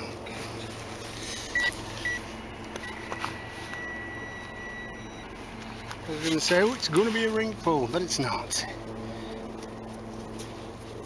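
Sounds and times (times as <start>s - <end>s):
metal detector beeps: 1.3s - 6.7s.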